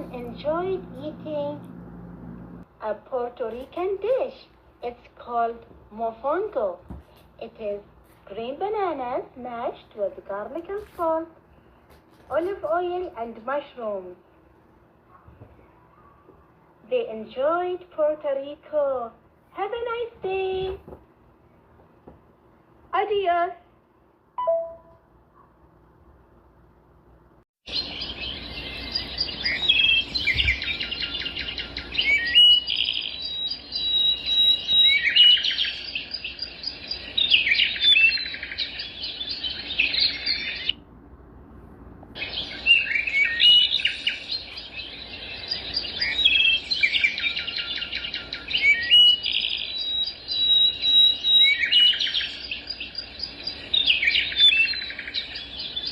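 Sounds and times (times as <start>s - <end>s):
birds chirping and trilling: 15.1s - 16.5s, 27.7s - 40.8s, 42.2s - 55.9s.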